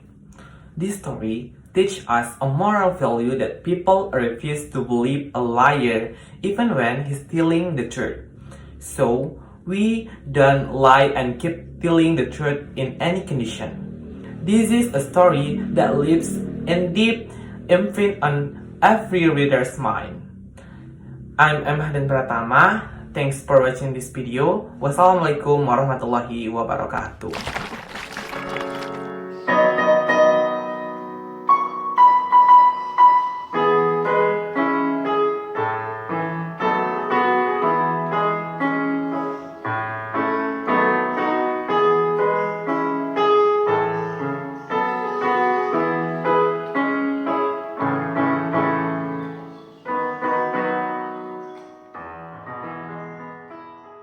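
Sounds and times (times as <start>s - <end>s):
gentle solo piano music: 28.4s - 54.0s.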